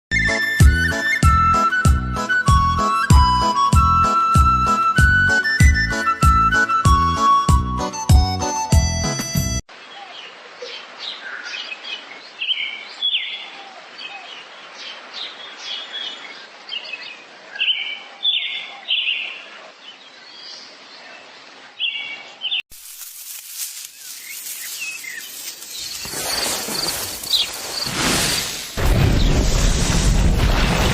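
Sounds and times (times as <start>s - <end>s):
birds chirping: 23.8s - 28.5s.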